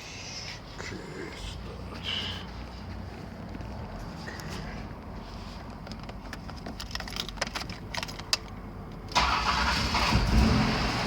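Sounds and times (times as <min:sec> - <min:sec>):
car keys jangling: 0:05.9 - 0:08.6
car engine starting: 0:09.0 - 0:11.0.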